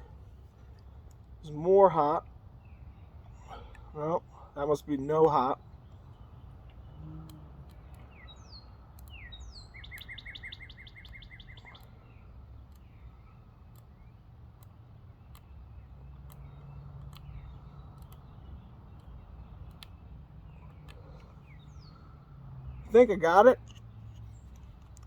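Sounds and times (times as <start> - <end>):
songbird chirping and trilling: 0.0 - 25.0
faint clicks: 13.6 - 22.0.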